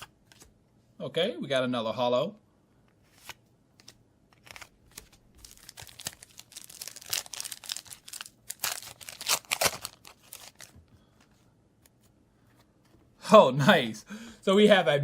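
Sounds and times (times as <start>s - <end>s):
cards rustling: 2.9s - 13.0s
foil wrappers crinkling: 4.4s - 10.8s.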